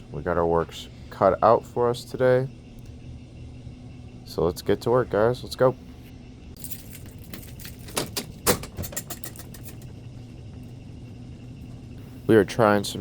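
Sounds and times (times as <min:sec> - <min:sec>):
steady low hum: 0:00.0 - 0:13.0
keys and latch clicks: 0:06.6 - 0:10.0.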